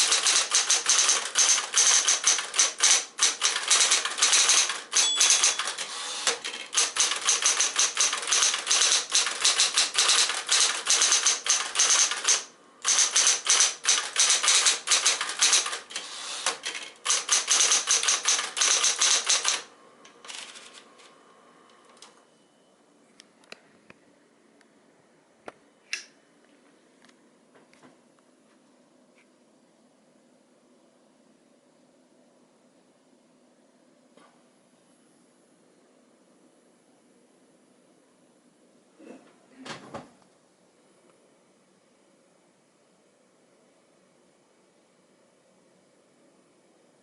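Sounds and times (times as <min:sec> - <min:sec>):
typewriter typing: 0:00.0 - 0:21.1
faint steady hum: 0:12.5 - 0:12.9, 0:19.6 - 0:47.0.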